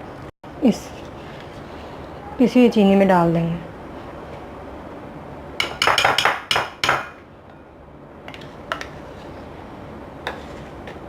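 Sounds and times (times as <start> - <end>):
spoon scraping mixing bowl: 10.2 - 11.0.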